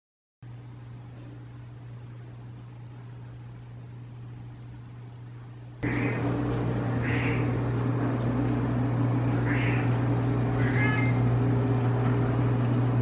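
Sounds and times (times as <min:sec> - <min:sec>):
low hum: 0:00.4 - 0:13.0
cat meowing: 0:09.4 - 0:11.3.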